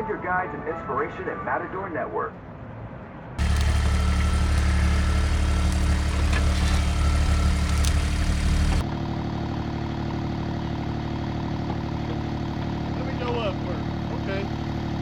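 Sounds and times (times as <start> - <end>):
skid steer engine running: 3.4 - 12.9.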